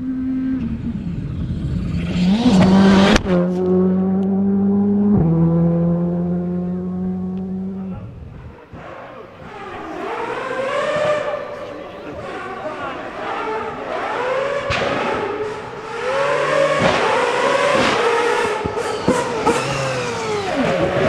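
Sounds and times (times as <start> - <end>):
rally car engine at high revs: 0.0 - 21.0
second engine: 0.0 - 21.0
sharp engine crack: 13.9 - 21.0.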